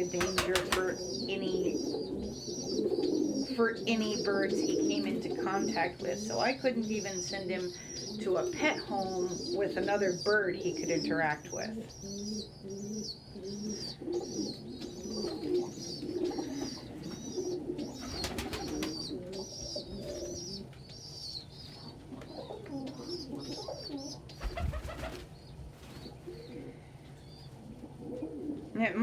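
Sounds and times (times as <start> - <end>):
pigeons cooing: 0.0 - 29.0.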